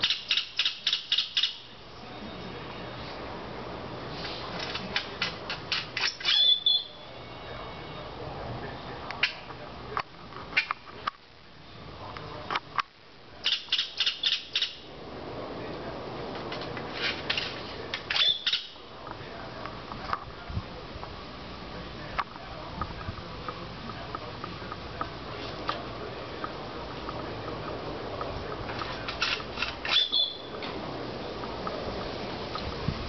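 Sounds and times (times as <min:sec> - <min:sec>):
bird chirping and clicking: 0:00.0 - 0:01.6, 0:13.4 - 0:14.8, 0:18.1 - 0:18.8
bird high whistle: 0:06.2 - 0:07.1, 0:18.2 - 0:18.8, 0:29.9 - 0:30.5.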